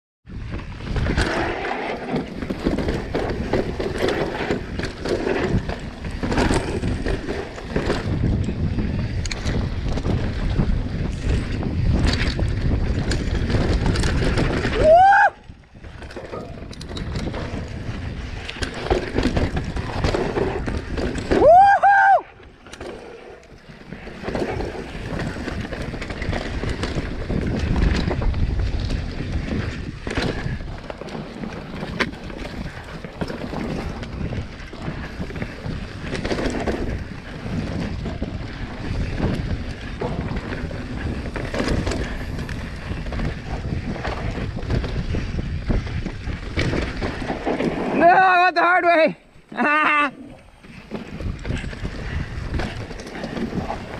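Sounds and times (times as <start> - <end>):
bike tyre rumble on trail: 0.3 - 53.9
wind buffeting microphone: 0.3 - 53.9
person whooping: 14.7 - 15.4, 21.3 - 22.3.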